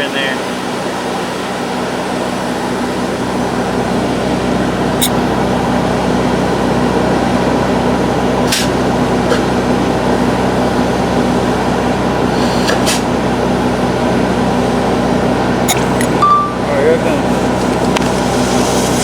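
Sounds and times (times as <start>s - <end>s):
sharp clicks: 15.7s - 16.2s.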